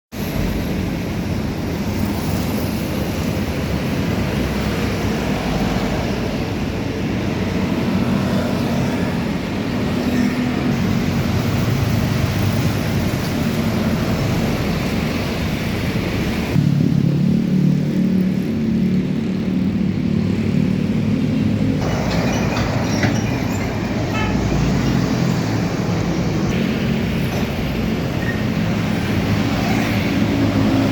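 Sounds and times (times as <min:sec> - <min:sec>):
bus engine drone: 0:00.1 - 0:30.9
road traffic rumble: 0:00.1 - 0:30.9.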